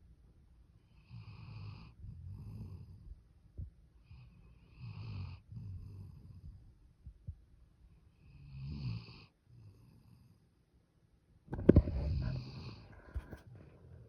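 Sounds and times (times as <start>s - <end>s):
puppy snoring: 0.9s - 3.2s, 4.0s - 6.6s, 8.2s - 10.4s, 11.5s - 14.0s.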